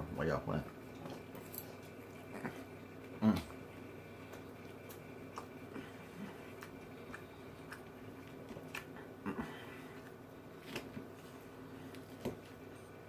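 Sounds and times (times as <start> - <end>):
faint steady hum: 0.0 - 13.0
chewing salad: 4.2 - 10.2.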